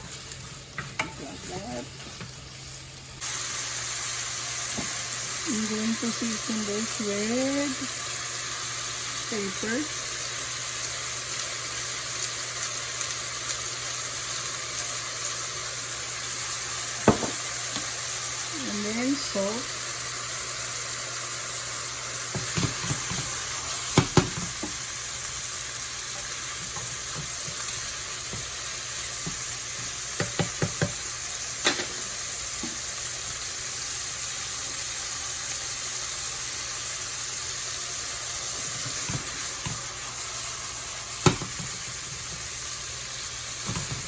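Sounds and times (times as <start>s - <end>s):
chicken sizzling in hot oil: 0.0s - 44.0s
utensil knocking against pan: 17.0s - 17.4s, 24.0s - 24.8s, 30.2s - 31.0s.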